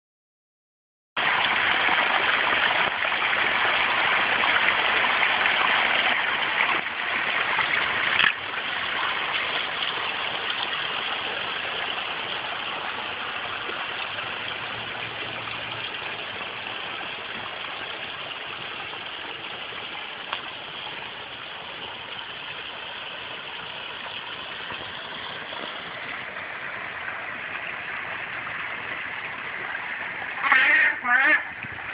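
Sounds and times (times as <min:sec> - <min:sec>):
water rushing over rocks: 0:01.2 - 0:31.9.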